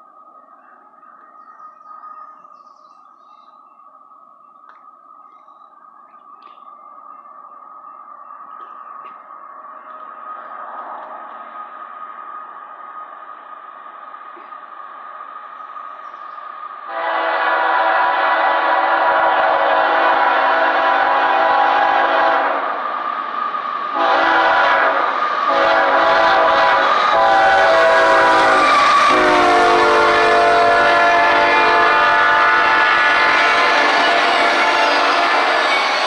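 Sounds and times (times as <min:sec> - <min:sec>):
freight train rumbling past: 0:06.2 - 0:36.0
locomotive air horn blasts: 0:16.9 - 0:22.7, 0:23.9 - 0:36.0.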